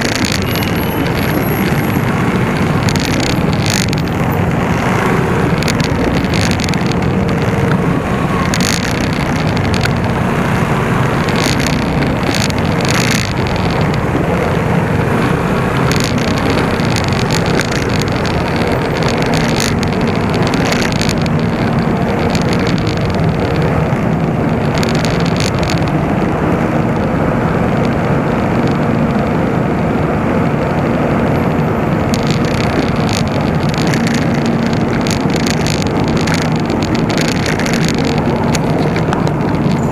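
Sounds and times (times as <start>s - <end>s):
motorcycle running: 0.0s - 39.9s
wind on microphone: 0.0s - 39.9s.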